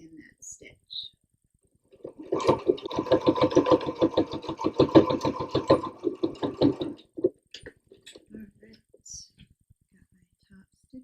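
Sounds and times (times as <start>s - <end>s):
sewing machine stitching: 1.9s - 7.3s.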